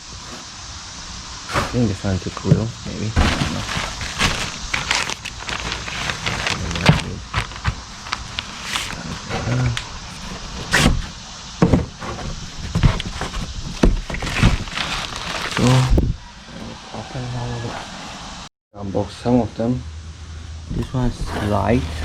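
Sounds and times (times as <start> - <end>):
cardboard rustling and scraping: 1.5 - 16.1, 20.7 - 22.0
cardboard boxes knocking and thudding: 2.6 - 16.0.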